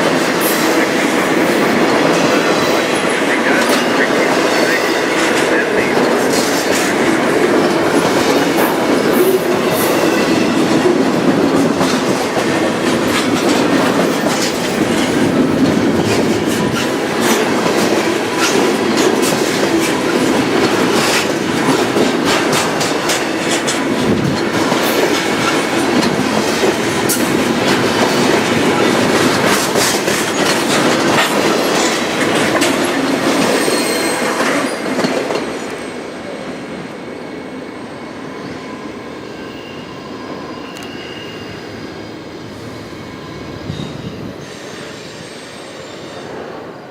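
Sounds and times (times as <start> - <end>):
train wheels clicking over rail joints: 0.0 - 35.8.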